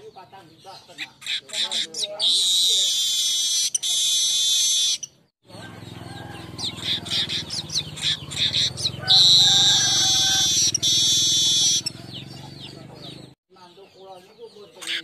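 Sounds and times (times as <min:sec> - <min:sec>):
weaver birds buzzy chatter: 0:00.0 - 0:15.0
quick bird chirps: 0:00.8 - 0:13.4.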